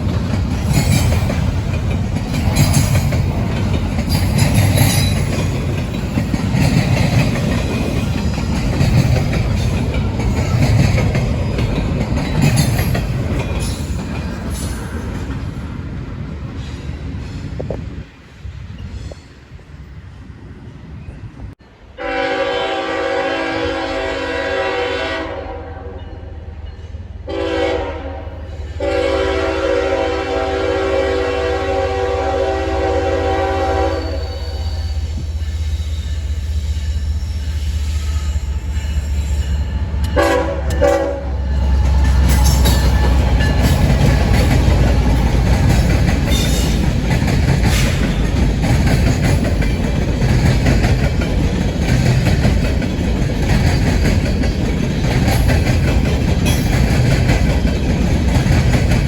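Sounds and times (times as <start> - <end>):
train wheels clattering on rails: 0.0 - 18.1, 33.7 - 59.0
train horn blasts: 22.0 - 26.3, 27.3 - 35.3, 37.9 - 46.8.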